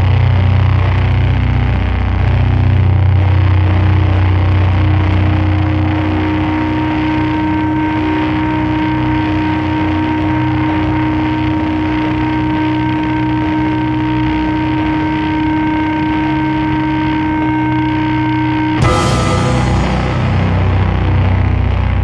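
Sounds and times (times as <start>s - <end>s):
distorted rumbling drone: 18.8s - 22.0s.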